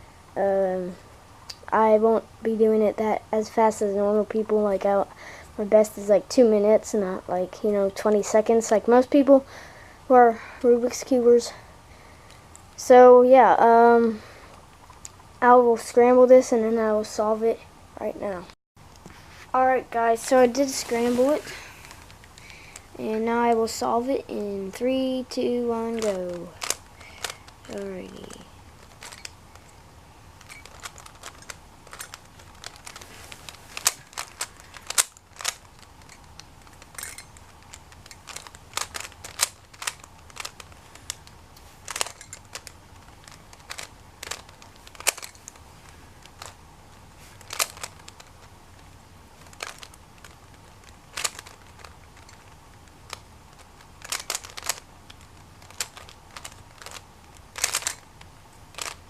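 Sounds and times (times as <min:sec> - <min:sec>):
puzzle cube clicking: 0:25.9 - 0:29.8, 0:30.4 - 0:59.0.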